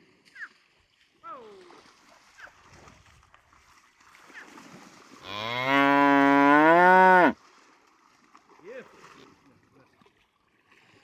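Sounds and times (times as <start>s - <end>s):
water buffalo mooing: 5.2s - 7.4s.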